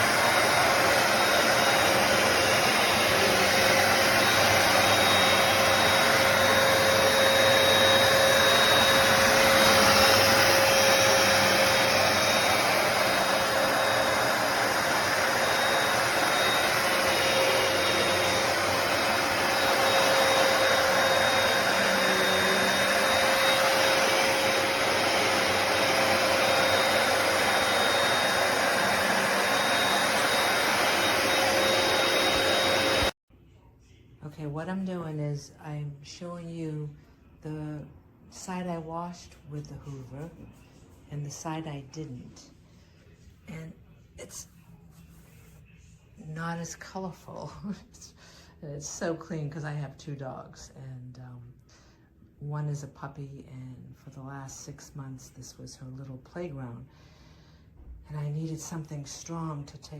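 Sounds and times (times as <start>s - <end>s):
carpet cleaner running: 0.0s - 33.2s.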